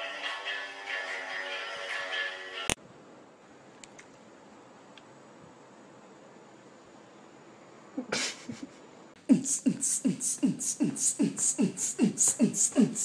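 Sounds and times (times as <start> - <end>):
fast beatboxed beat: 9.2 - 13.0.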